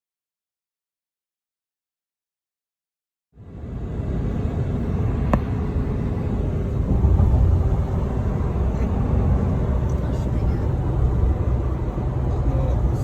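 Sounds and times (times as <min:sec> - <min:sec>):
truck road and engine rumble: 0:03.4 - 0:13.0.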